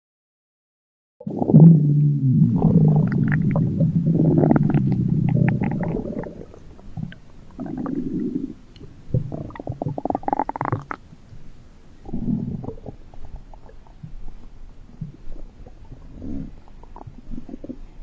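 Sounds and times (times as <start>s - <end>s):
cartoon stomach growl: 1.2s - 8.6s, 9.2s - 11.0s
short gurgling pulses: 1.3s - 11.0s.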